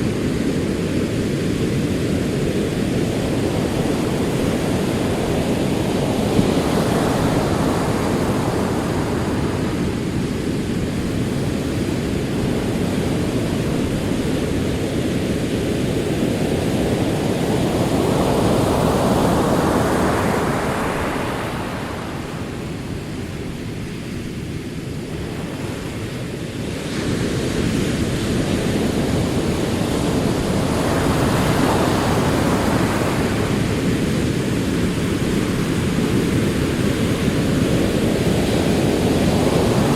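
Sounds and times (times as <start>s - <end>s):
ocean waves rolling in: 0.0s - 39.9s.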